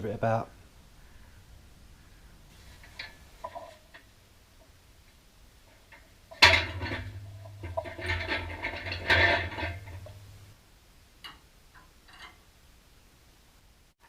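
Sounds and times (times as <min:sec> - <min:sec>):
low steady hum: 0:00.0 - 0:14.0
clattering and scraping: 0:02.5 - 0:04.1, 0:05.0 - 0:10.5, 0:11.3 - 0:12.4.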